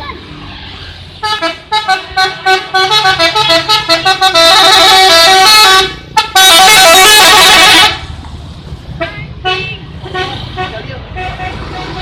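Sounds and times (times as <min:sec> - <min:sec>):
musical horn playing tune: 0:01.2 - 0:08.0.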